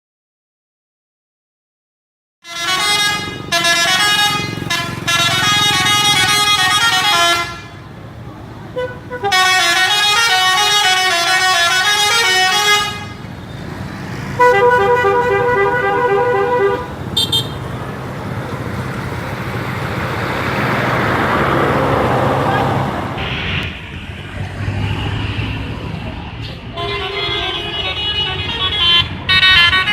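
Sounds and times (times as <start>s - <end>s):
high horn toot: 2.4s - 7.8s, 8.8s - 13.3s, 14.4s - 17.7s, 23.2s - 23.8s, 26.7s - 29.9s
musical bus horn tune: 2.4s - 8.0s, 8.7s - 13.4s, 14.3s - 17.7s, 23.2s - 23.8s, 26.7s - 29.9s
bus engine running: 2.5s - 29.9s.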